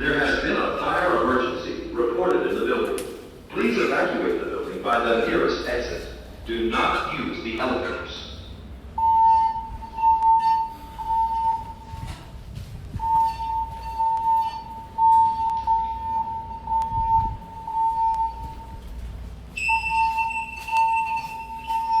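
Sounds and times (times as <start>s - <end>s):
voice messages: 0.0s - 8.6s
pulsing high-pitched alarm tone: 9.0s - 12.1s, 13.0s - 18.9s, 19.5s - 22.0s
higher-pitched alarm tone: 9.0s - 12.2s, 13.0s - 18.9s, 19.5s - 22.0s.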